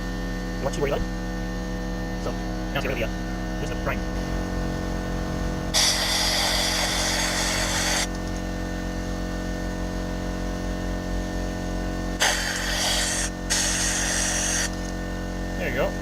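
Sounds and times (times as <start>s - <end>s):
steady electrical hum: 0.0s - 16.0s
pressurized spray hissing: 5.8s - 8.1s, 12.2s - 14.9s.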